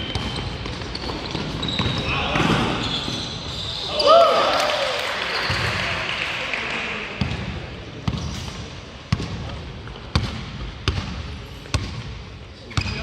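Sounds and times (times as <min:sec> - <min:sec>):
basketball bouncing on court floor: 0:00.0 - 0:03.3, 0:07.2 - 0:13.0.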